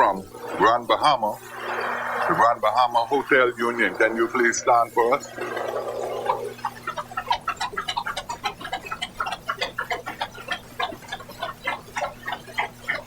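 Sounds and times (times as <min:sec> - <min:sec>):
faint electrical hum: 0:00.0 - 0:13.0.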